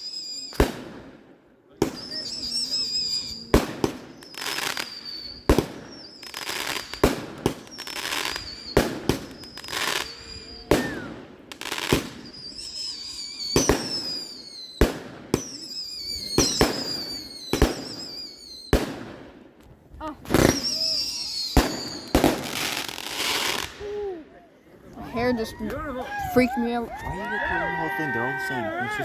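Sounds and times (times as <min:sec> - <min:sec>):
fireworks whistles falling in pitch: 0:00.0 - 0:01.1, 0:01.8 - 0:19.0, 0:20.3 - 0:24.0
fireworks bangs and crackling: 0:00.0 - 0:24.0.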